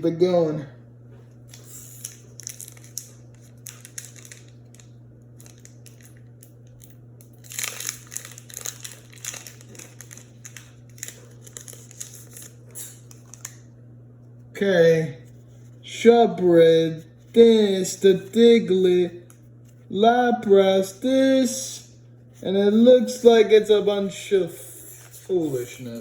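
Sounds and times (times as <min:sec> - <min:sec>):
foil wrapper crinkling and tearing: 0:01.5 - 0:13.6.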